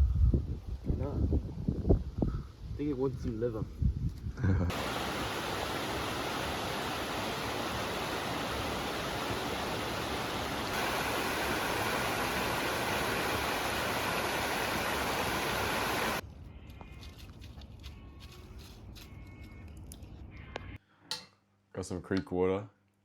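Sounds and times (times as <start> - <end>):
creek water rushing: 4.7 - 16.2.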